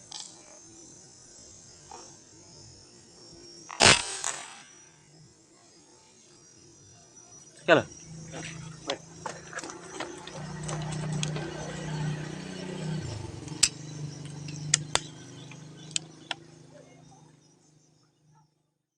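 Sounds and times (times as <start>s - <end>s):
steady low hum: 0.0s - 18.4s
sharp clicks: 8.9s - 11.8s, 13.1s - 16.5s.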